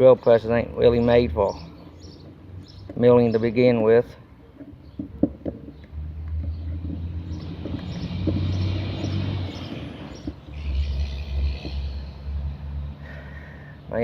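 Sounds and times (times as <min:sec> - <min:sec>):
vehicle passing by: 0:05.8 - 0:14.0.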